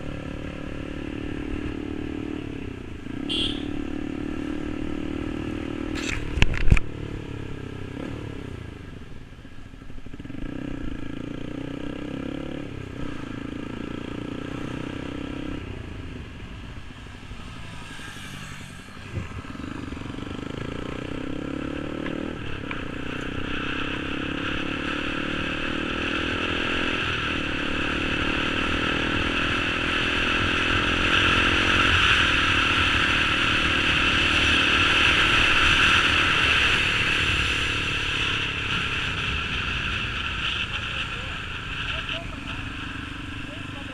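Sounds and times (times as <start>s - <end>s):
motorcycle engine revving through gears: 0.0s - 43.9s
wind noise: 19.0s - 20.0s.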